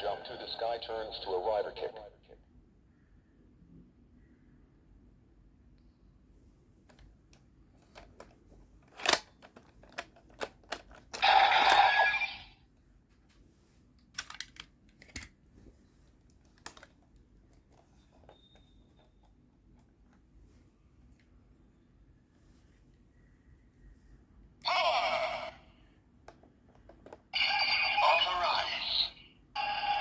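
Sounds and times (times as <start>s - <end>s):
loud toy sound burst: 11.2s - 12.5s
plastic toy clicks and snaps: 14.2s - 15.4s.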